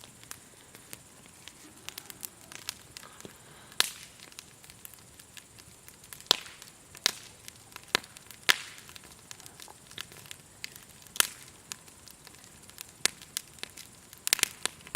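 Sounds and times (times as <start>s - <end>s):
firewood crackling and popping: 0.0s - 14.9s.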